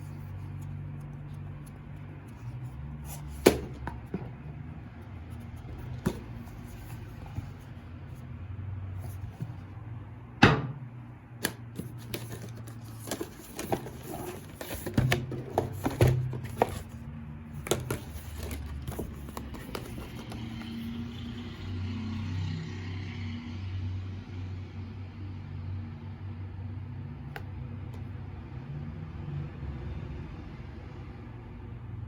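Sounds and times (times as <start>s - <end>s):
hands handling packaging: 0.0s - 4.4s, 5.3s - 7.8s, 11.4s - 21.3s.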